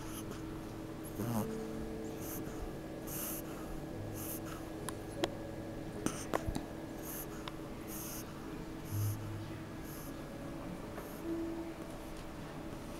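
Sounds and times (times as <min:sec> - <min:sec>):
puppy snoring softly: 0:00.0 - 0:04.8, 0:06.0 - 0:10.3.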